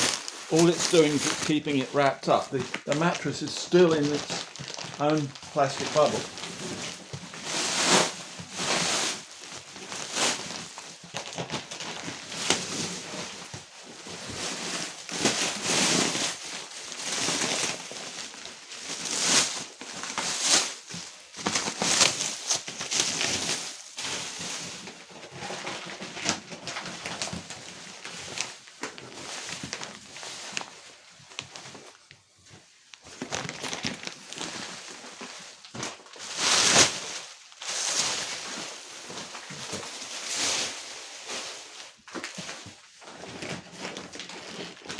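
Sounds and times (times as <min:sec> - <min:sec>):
plastic film rustling and crinkling: 0:00.0 - 0:44.9.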